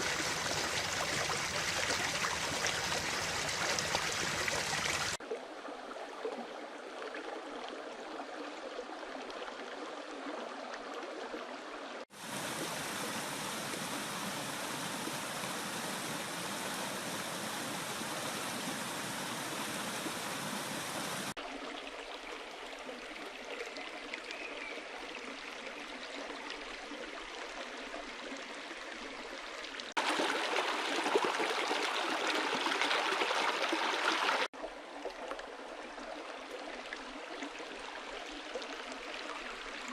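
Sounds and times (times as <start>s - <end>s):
stream water rushing: 0.0s - 5.2s, 12.1s - 21.4s, 30.0s - 39.9s.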